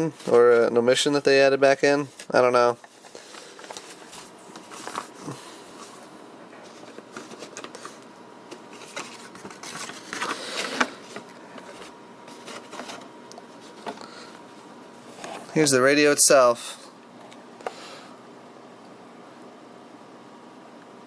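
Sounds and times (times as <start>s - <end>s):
cardboard box and papers rustling: 2.2s - 6.0s, 6.6s - 14.0s.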